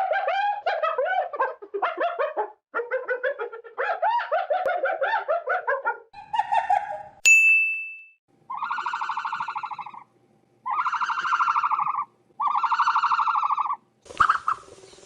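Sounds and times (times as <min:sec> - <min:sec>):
animal chattering calls: 0:08.5 - 0:14.8.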